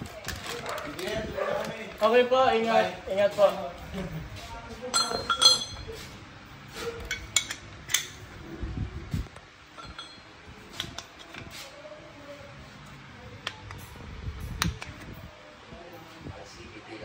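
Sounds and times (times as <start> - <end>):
light metallic clinks and taps: 4.9 - 6.0, 9.7 - 11.1.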